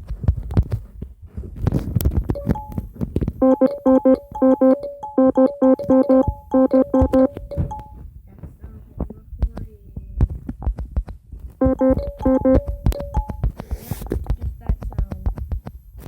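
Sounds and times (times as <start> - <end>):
dull thumps and taps: 5.8 - 15.8.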